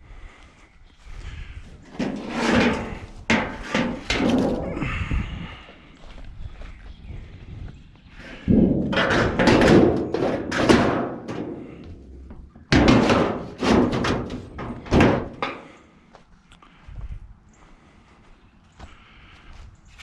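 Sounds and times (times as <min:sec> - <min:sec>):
scrap metal clanking and banging: 0:01.8 - 0:05.0, 0:08.2 - 0:15.8.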